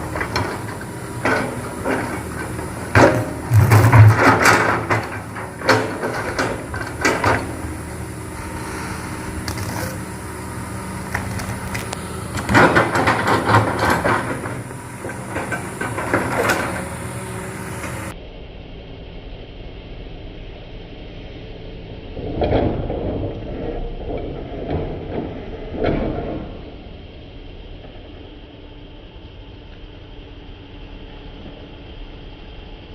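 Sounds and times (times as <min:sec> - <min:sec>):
knocks and clanks: 0:00.0 - 0:07.7, 0:11.1 - 0:17.0
excavator diesel engine surging: 0:00.0 - 0:18.3.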